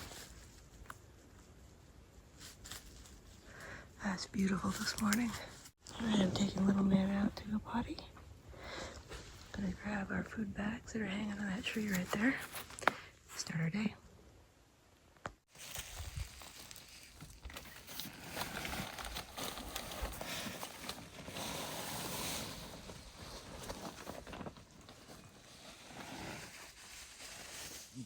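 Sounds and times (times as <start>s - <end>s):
camping gear rustling: 0.0s - 3.6s, 11.6s - 13.4s, 15.4s - 28.0s.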